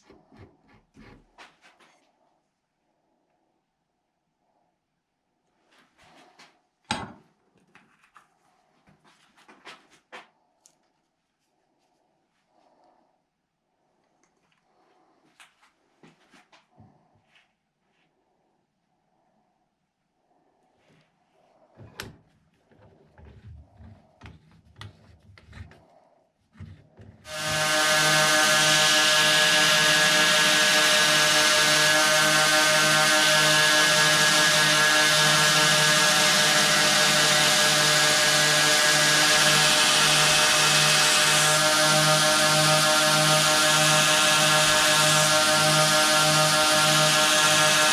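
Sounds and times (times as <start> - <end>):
power tool motor running: 27.3 - 47.9.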